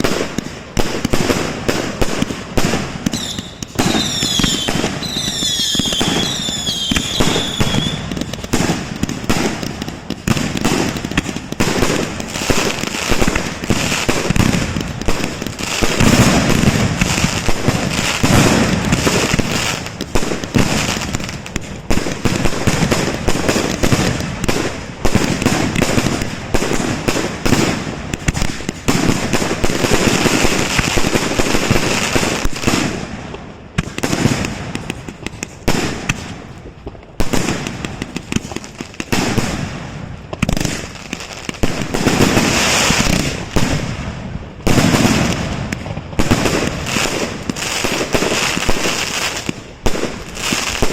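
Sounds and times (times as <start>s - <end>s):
fireworks banging and crackling: 0.0s - 50.9s
fireworks shrill whistles: 1.1s - 21.3s, 40.6s - 43.8s.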